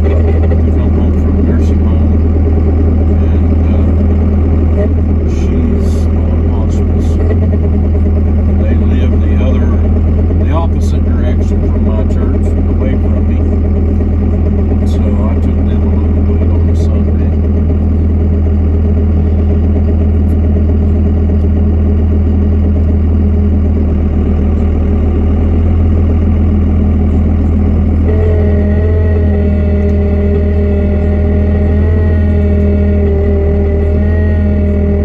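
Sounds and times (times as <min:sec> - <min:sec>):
hydraulic pump whine: 0:00.0 - 0:35.0
truck engine running: 0:00.0 - 0:35.0.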